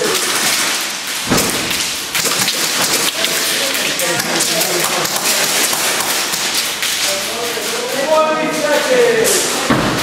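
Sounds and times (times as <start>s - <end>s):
bb impacts: 0.0s - 7.6s.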